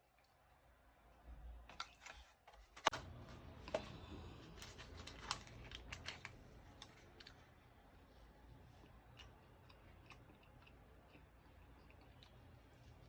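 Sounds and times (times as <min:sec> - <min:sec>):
close-miked eating clicks and crackles: 0:03.6 - 0:13.0.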